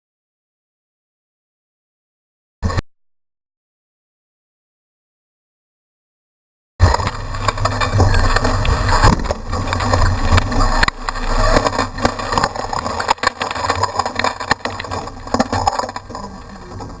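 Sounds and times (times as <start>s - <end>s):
knocks and rattles: 6.8s - 17.0s
truck engine rumble: 6.8s - 17.0s.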